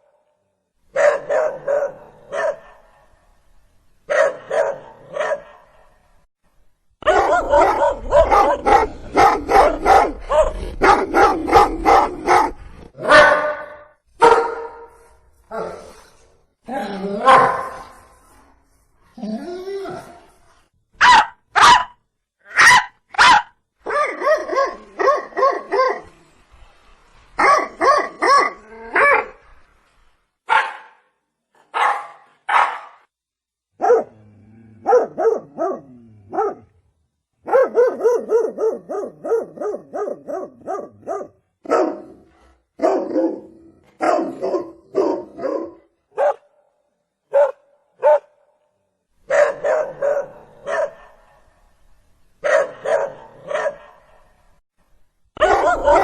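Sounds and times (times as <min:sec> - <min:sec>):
dog barking: 0:00.9 - 0:03.2, 0:04.1 - 0:06.0, 0:07.0 - 0:15.0, 0:17.2 - 0:17.9, 0:21.0 - 0:26.1, 0:27.4 - 0:29.4, 0:30.5 - 0:33.1, 0:33.8 - 0:34.2, 0:34.8 - 0:36.7, 0:37.4 - 0:46.7, 0:47.3 - 0:48.4, 0:49.2 - 0:51.5, 0:52.4 - 0:54.3, 0:55.4 - 0:56.0.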